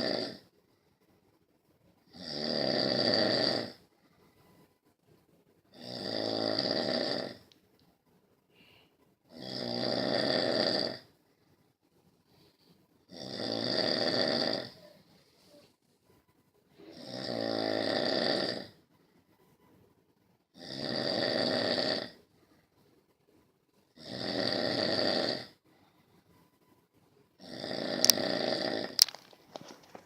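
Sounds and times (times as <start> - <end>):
person snoring: 0.0 - 0.5, 2.0 - 3.9, 5.7 - 7.5, 9.3 - 11.2, 13.1 - 15.7, 16.7 - 18.8, 20.5 - 22.3, 23.9 - 25.6, 27.4 - 29.8.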